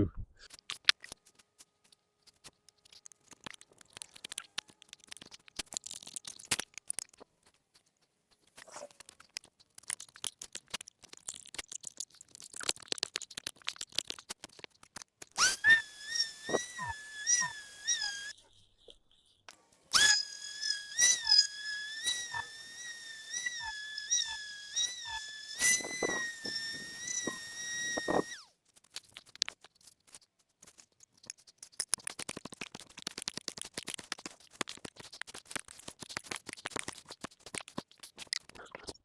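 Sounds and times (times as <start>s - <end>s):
high whine with knocks: 15.4s - 18.3s, 20.0s - 28.4s
scraping strokes whittling wood: 15.4s - 18.4s, 19.8s - 28.4s.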